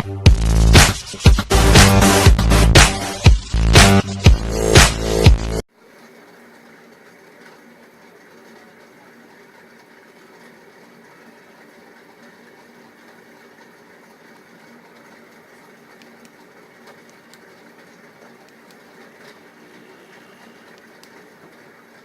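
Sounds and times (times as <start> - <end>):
electric fan motor humming: 0.1 - 22.0.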